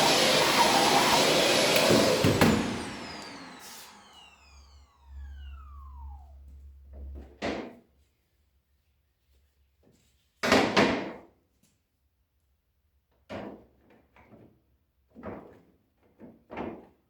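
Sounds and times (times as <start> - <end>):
electric fan whining: 0.0 - 6.9.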